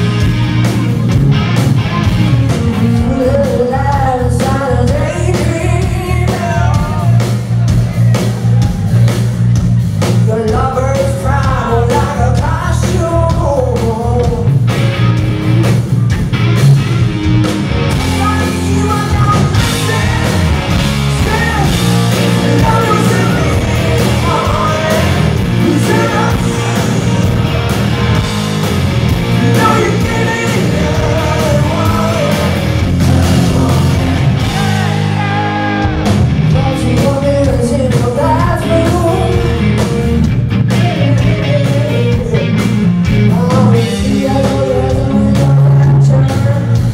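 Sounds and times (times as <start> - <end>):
live rock band playing: 0.0 - 46.9
woman singing lead: 2.0 - 7.3, 18.1 - 27.8, 29.4 - 42.6, 43.3 - 46.9.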